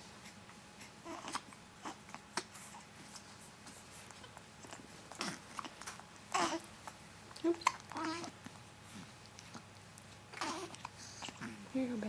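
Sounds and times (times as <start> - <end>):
infants hiccuping: 1.0 - 2.5, 4.6 - 8.5, 9.4 - 11.7.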